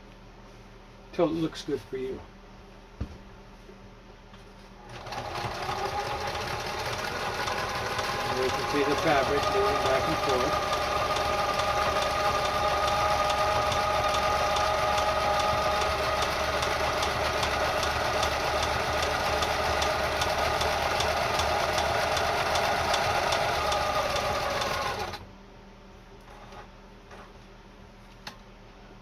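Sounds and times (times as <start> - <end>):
sewing machine running: 4.8 - 25.2.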